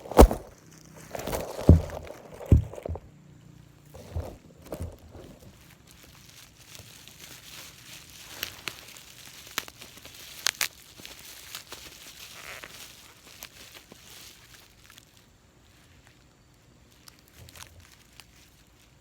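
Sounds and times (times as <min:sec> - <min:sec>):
packaging crinkling and tearing: 0:00.0 - 0:03.0, 0:04.0 - 0:19.0.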